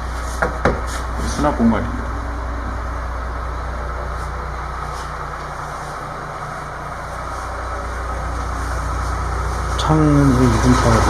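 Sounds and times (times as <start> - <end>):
crane engine droning: 0.0 - 11.0.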